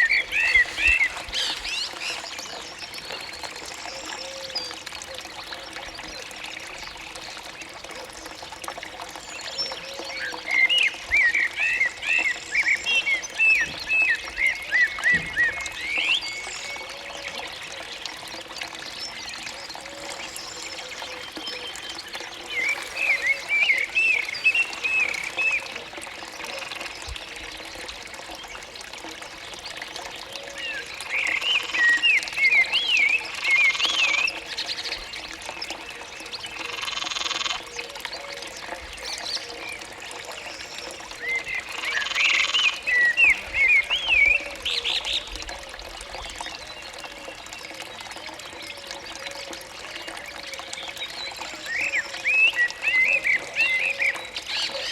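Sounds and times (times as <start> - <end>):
frogs calling: 0.0 - 2.8, 19.9 - 25.8, 36.6 - 37.8, 40.6 - 44.8.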